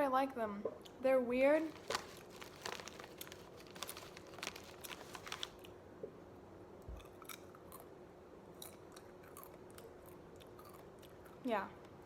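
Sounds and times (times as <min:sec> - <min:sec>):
person chewing potato chips: 0:01.8 - 0:05.8, 0:07.0 - 0:11.5.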